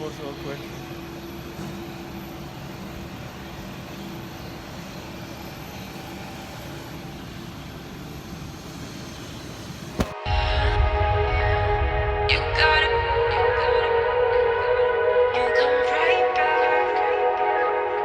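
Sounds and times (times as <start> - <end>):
jet engine and air noise: 0.0 - 10.2.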